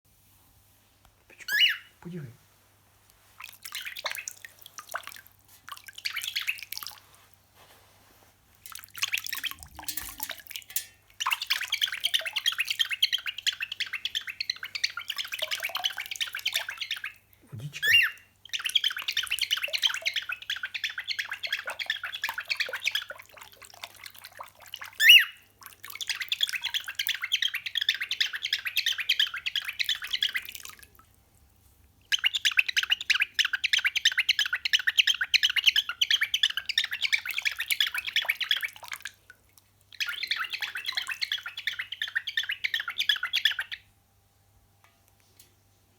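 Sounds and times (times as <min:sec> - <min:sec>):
cockatiel calls: 0:01.4 - 0:02.0, 0:12.1 - 0:23.0, 0:25.0 - 0:25.4.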